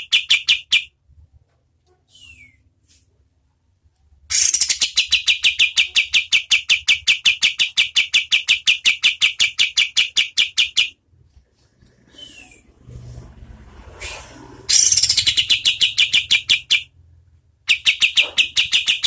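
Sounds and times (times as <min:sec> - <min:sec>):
bird trilling: 0:14.1 - 0:16.9, 0:17.7 - 0:19.0.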